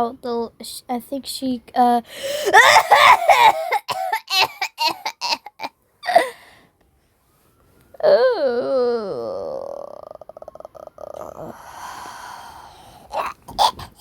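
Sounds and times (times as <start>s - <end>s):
long wavering cry: 8.0s - 13.4s
person making broken vocal sounds: 8.0s - 14.0s.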